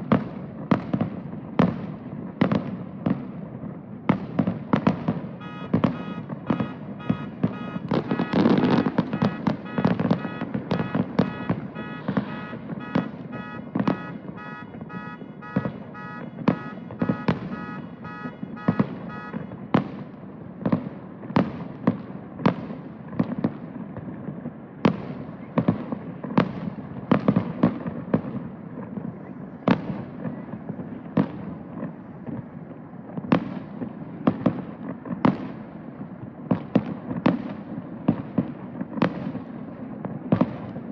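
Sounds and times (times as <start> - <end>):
fireworks bursting: 0.0 - 40.9
rapid electronic beeping: 5.4 - 19.4.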